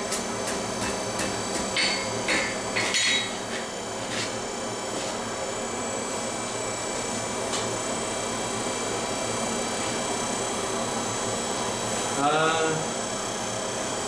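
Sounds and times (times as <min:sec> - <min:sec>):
hammer striking steel: 0:00.4 - 0:03.3.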